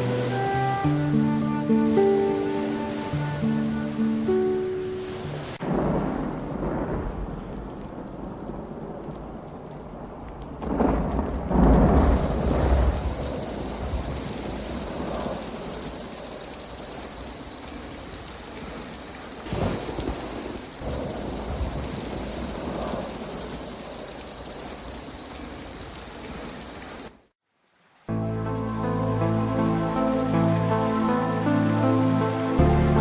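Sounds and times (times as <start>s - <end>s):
music: 0.0s - 5.6s, 28.1s - 33.0s
heavy rain: 0.0s - 33.0s
thunder rumbling: 5.5s - 26.7s.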